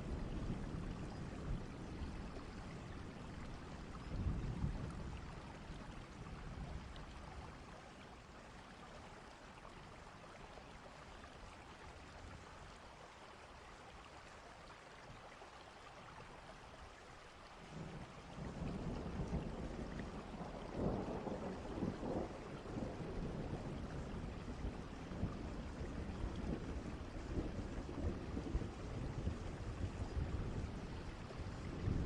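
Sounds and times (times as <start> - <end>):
steady rain: 0.0 - 32.0
rolling thunder: 18.2 - 32.0.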